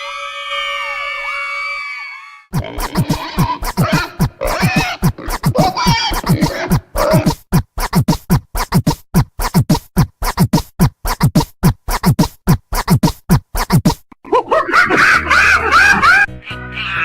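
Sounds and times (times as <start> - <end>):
electronic music with kick drum: 2.5 - 14.0
record scratch effects: 2.5 - 14.1.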